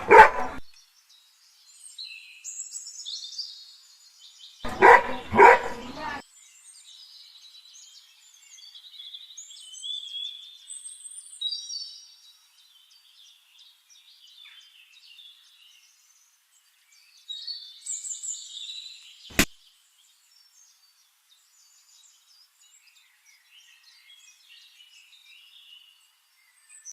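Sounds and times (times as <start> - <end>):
dog barking: 0.0 - 0.7, 4.7 - 6.2
birds chirping and trilling: 0.0 - 12.0
sharp click: 19.3 - 19.5.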